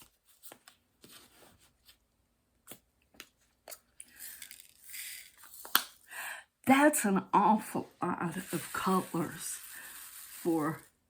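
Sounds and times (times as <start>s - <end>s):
soft plastic rustling: 8.3s - 11.0s.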